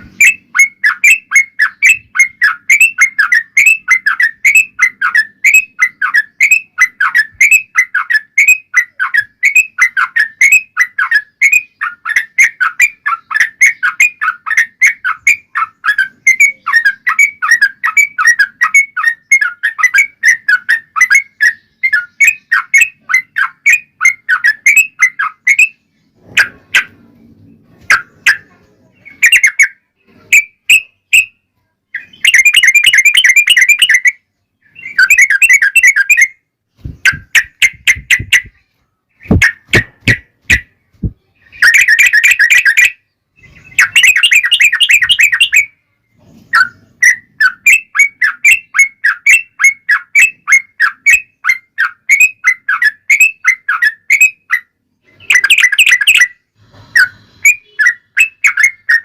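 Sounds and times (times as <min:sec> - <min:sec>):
bulbuls singing: 0:00.0 - 0:31.3, 0:31.9 - 0:45.7.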